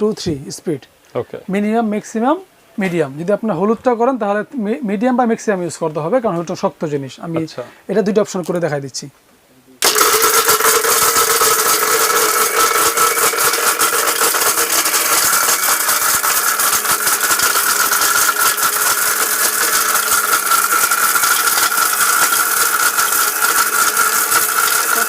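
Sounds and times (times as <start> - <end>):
blender grinding: 9.8 - 25.0.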